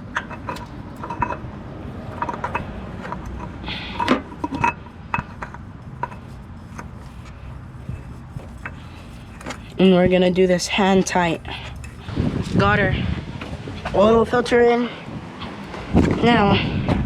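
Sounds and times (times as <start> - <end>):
oil filter and tools clinking: 0.0 - 12.6.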